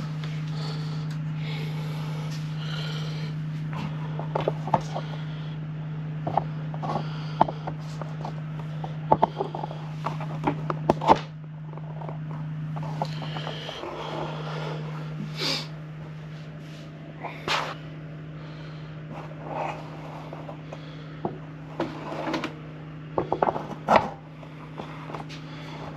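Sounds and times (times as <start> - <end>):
steady low hum: 0.0 - 25.9.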